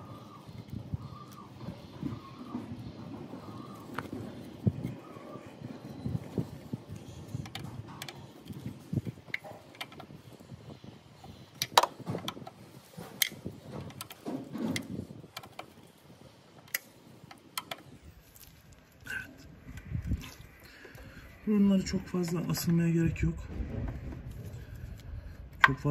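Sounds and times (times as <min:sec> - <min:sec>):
dull low thuds: 0:23.2 - 0:25.6.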